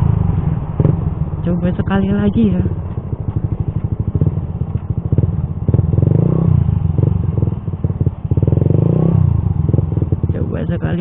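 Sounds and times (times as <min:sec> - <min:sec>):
motorcycle engine revving: 0:00.0 - 0:11.0.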